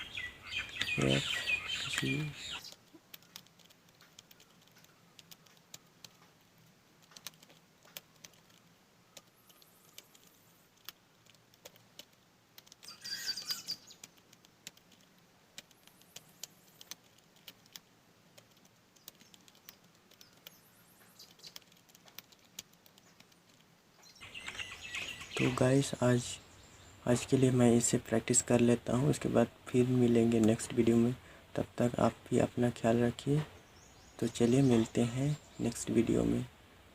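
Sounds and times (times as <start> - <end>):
birds chirping faintly: 0.0 - 36.9
keyboard keys clicking: 1.9 - 6.4, 7.0 - 8.6, 9.2 - 20.6, 21.2 - 23.7.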